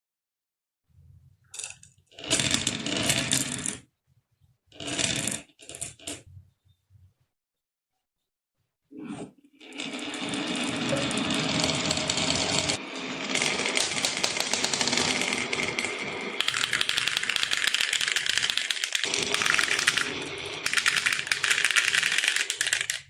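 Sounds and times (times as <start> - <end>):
marbles rattling down wooden track: 1.6 - 3.8, 4.8 - 6.2, 9.8 - 23.0.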